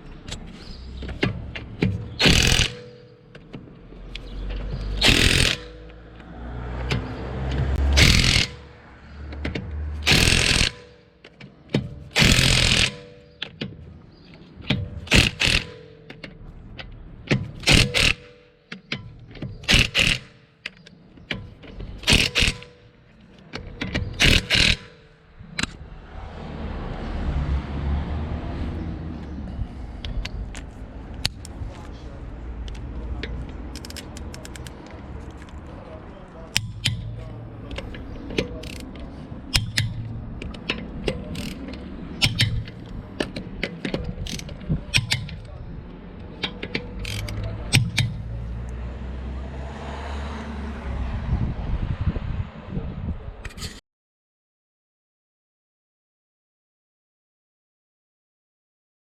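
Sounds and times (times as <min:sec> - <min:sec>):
cordless impact driver hammering: 0:01.0 - 0:03.4, 0:04.2 - 0:06.0, 0:06.8 - 0:08.8, 0:09.5 - 0:11.1, 0:11.8 - 0:13.6, 0:14.6 - 0:16.2, 0:17.3 - 0:18.9, 0:19.5 - 0:20.7, 0:21.3 - 0:23.0, 0:23.6 - 0:25.1, 0:36.5 - 0:45.5, 0:46.4 - 0:48.5.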